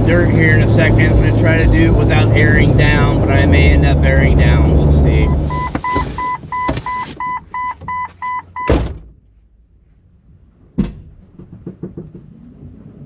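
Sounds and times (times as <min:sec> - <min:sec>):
door-open warning chime beeping: 0:05.2 - 0:08.8
car door shutting: 0:05.4 - 0:09.2.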